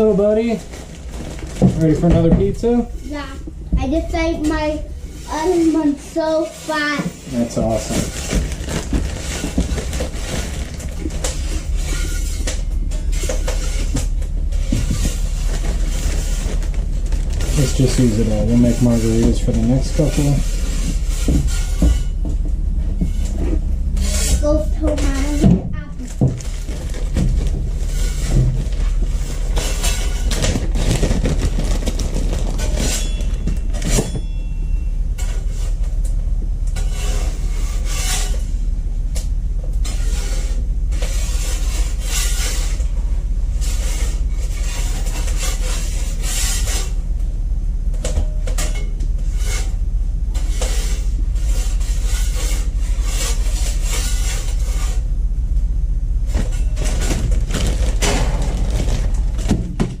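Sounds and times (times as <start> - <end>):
clattering and scraping: 0.0 - 60.0
low machine hum: 0.0 - 60.0.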